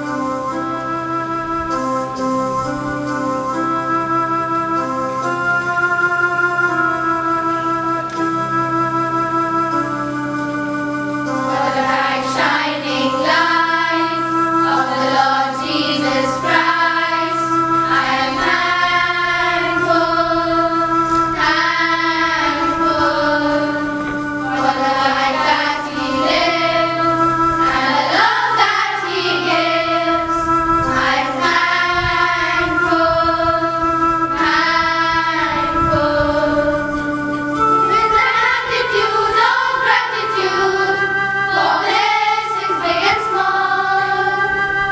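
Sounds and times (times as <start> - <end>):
keyboard accompaniment: 0.0 - 44.9
children singing in unison: 11.2 - 44.9.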